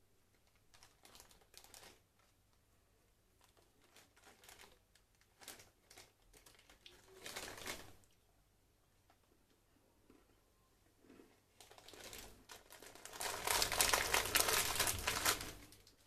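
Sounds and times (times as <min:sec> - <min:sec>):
crunching and rustling from eating: 0:03.4 - 0:08.2, 0:11.0 - 0:16.0.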